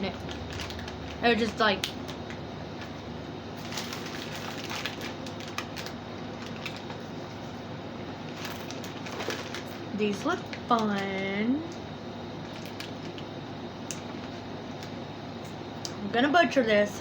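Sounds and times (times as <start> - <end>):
plastic packaging crinkling: 0.0 - 7.2, 8.2 - 11.8, 12.4 - 13.3
steady low hum: 0.0 - 17.0.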